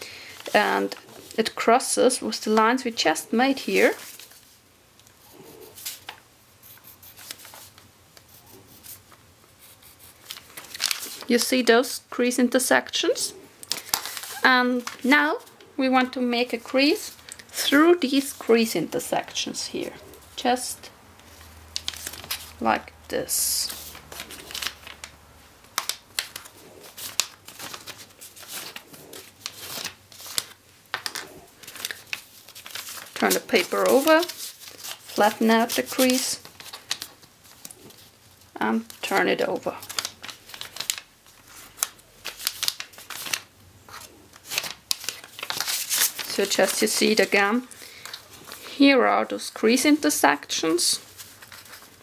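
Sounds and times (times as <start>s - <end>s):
paper rustling: 0.3s - 4.6s, 5.3s - 11.7s, 13.6s - 15.7s, 21.2s - 48.7s, 49.6s - 52.0s.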